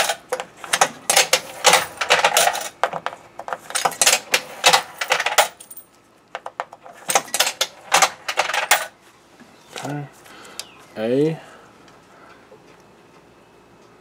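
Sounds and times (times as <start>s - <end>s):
coins clinking into vending machine: 0.0s - 8.9s.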